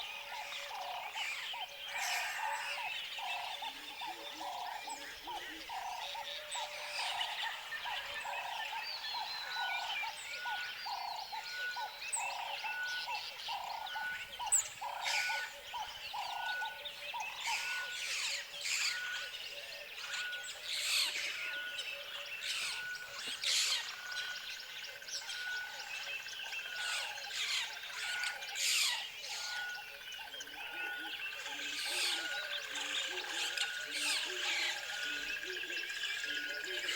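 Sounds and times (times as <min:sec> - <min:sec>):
birds chirping and trilling: 0:00.0 - 0:36.9
lower bird calls: 0:00.0 - 0:36.9.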